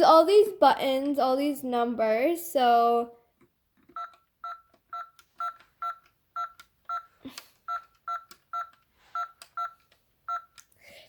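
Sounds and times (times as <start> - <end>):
toy phone beeps: 3.9 - 10.7.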